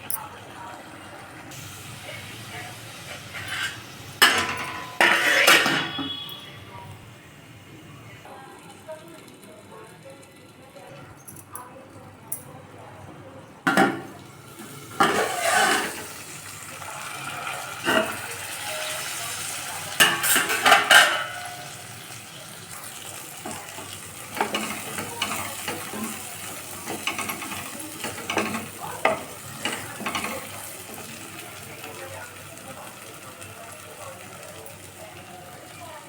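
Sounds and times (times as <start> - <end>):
vegetables sizzling in a pan: 0.0 - 7.4, 14.1 - 36.0
spatula scraping a pan: 3.0 - 6.3, 14.9 - 16.2.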